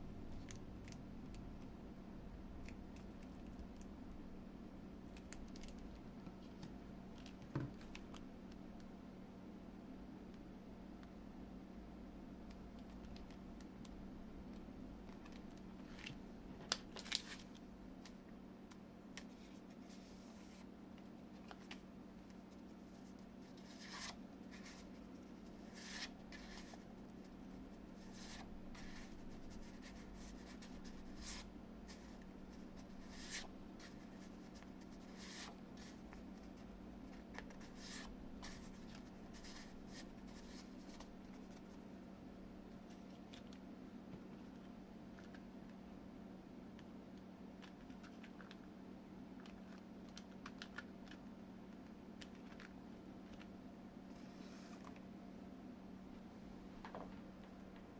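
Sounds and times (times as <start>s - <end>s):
steady low hum: 17.4s - 50.2s.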